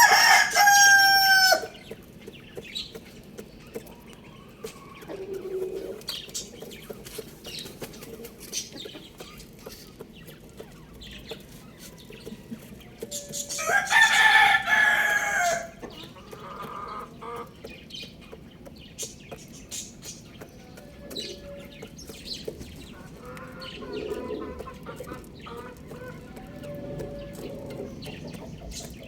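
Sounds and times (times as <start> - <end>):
rooster crowing: 0.0 - 1.7, 13.5 - 15.8
chickens clucking: 0.0 - 29.0.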